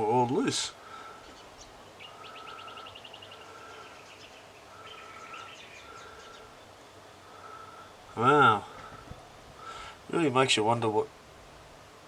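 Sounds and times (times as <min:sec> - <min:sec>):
faint bird chirps: 0:00.8 - 0:09.9.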